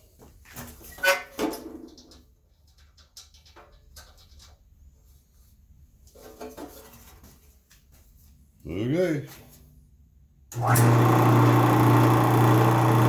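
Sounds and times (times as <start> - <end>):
electric motor humming: 10.6 - 13.0.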